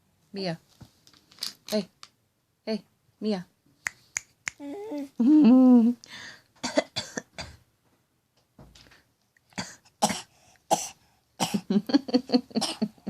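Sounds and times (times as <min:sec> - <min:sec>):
child fake coughing: 0:06.6 - 0:07.6, 0:12.6 - 0:12.9.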